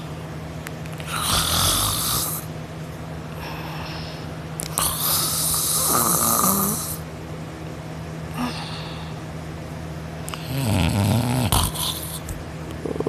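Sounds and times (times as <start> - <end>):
steady low hum: 0.0 - 13.0
person snoring: 1.0 - 2.5, 4.7 - 7.0, 8.3 - 9.1, 10.3 - 12.2.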